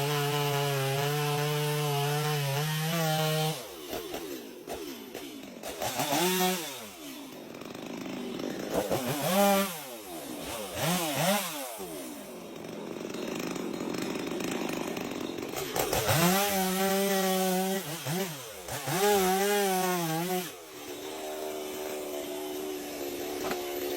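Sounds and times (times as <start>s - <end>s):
chainsaw idling: 0.0s - 23.9s
chainsaw revving: 0.0s - 23.9s.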